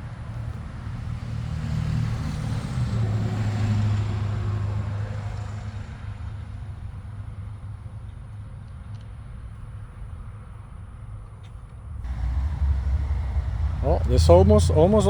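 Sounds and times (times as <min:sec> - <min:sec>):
vehicle engine passing by: 0:12.1 - 0:15.0.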